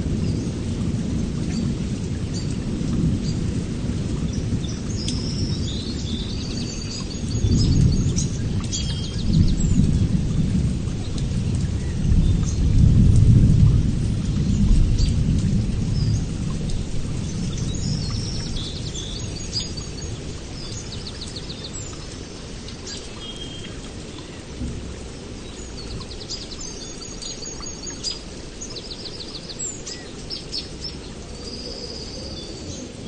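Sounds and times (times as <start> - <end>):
low rolling thunder: 0.0 - 22.7, 23.9 - 27.1
steady rain: 0.0 - 33.0.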